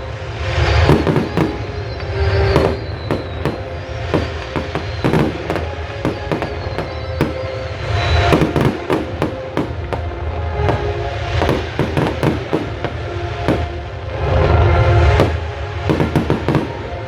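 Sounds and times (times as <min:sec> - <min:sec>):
fireworks bangs and crackles: 0:00.0 - 0:17.0
music playing: 0:00.0 - 0:17.0.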